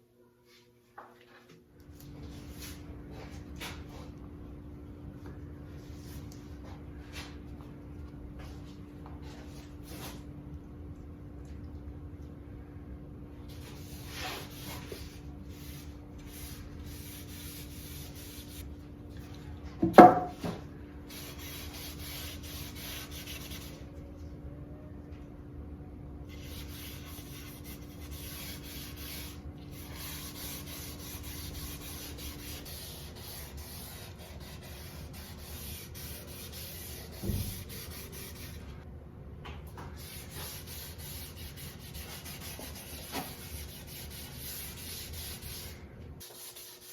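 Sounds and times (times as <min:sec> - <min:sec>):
sandpaper rubbing on wood: 0:40.1 - 0:46.9.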